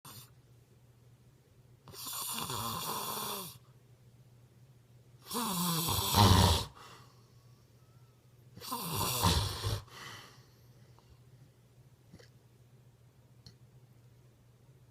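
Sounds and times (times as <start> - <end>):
person snoring: 1.9 - 3.6, 5.2 - 7.0, 8.6 - 10.0.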